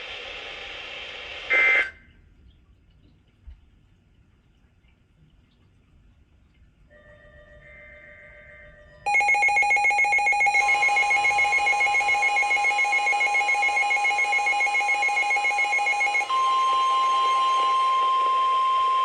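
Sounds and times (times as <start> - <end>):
pulsing two-tone beep: 9.1 - 19.0
steady alert tone: 9.1 - 19.0.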